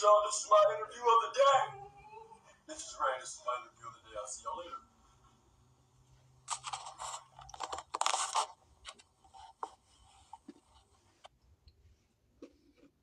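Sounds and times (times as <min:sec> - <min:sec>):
crunching scraping rustle: 0:06.4 - 0:10.5.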